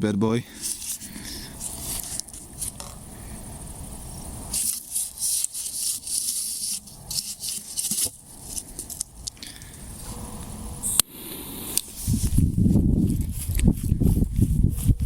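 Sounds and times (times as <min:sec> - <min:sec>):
firework fuse hissing: 0:00.6 - 0:08.3.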